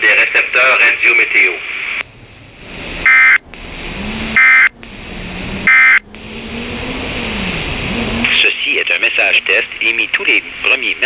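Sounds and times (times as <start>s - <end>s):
radio hiss: 0.0s - 2.0s, 8.2s - 11.0s.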